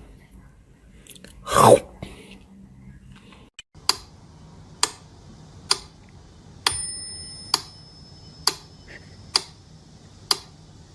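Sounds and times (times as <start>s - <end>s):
bell-like ding: 6.7s - 8.4s.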